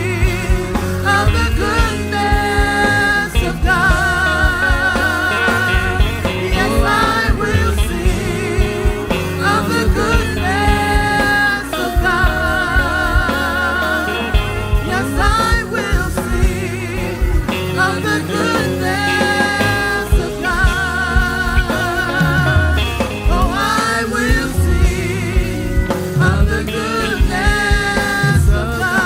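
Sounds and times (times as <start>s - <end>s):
worship band music: 0.0s - 29.0s.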